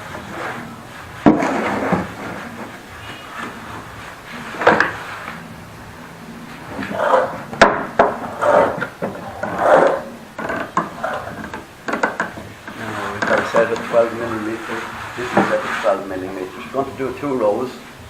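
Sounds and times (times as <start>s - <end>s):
wood scraping: 0.0s - 18.0s
wood knocking on workbench: 7.5s - 13.5s.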